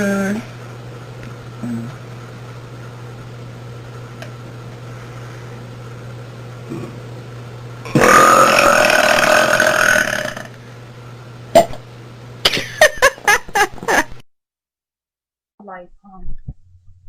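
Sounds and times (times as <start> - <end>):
woman burping: 7.9 - 10.5.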